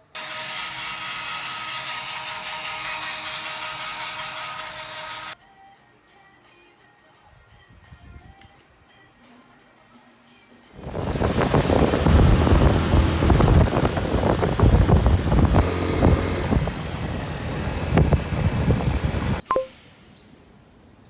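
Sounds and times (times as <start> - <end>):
road vehicle rumbling: 10.8 - 19.4
wind buffeting microphone: 10.8 - 19.4
brief beep: 19.4 - 19.8.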